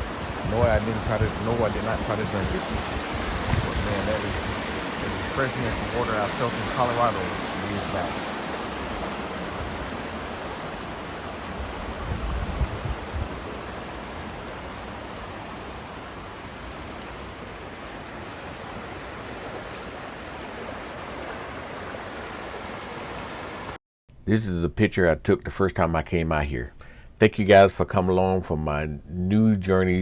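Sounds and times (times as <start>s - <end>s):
water rushing over waterfall: 0.0s - 23.8s.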